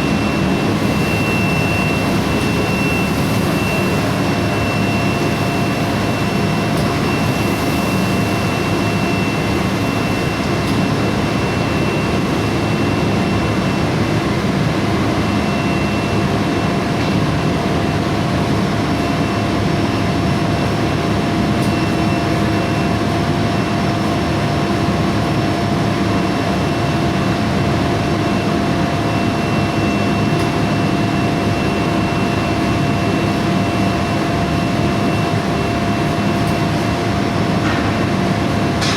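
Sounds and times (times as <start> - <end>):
furnace roar: 0.0 - 38.9
steady high whine: 0.0 - 38.9.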